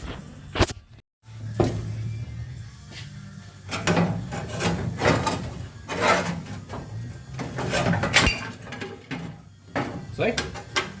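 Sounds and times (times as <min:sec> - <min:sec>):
metal scraping and clunking: 0:03.6 - 0:11.0.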